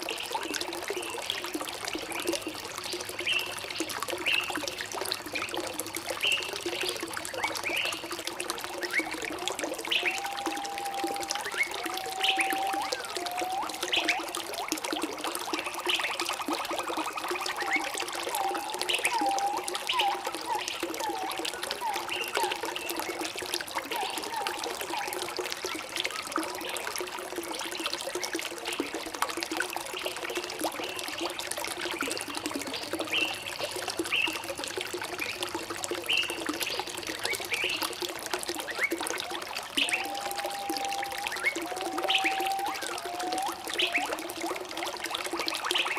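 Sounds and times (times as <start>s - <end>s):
water trickling and pouring: 0.0s - 45.9s
birds chirping and whistling: 9.9s - 14.3s, 17.6s - 22.9s, 39.8s - 44.2s.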